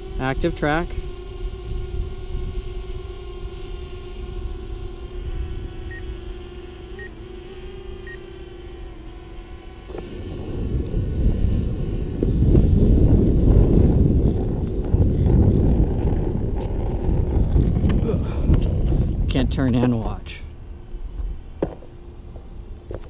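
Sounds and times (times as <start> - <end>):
drone propellers humming: 0.0 - 23.0
low rushing noise: 9.9 - 22.9.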